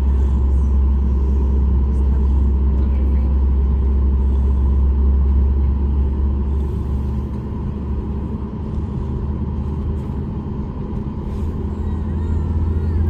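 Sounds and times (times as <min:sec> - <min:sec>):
airplane cabin engine rumble: 0:00.0 - 0:13.0.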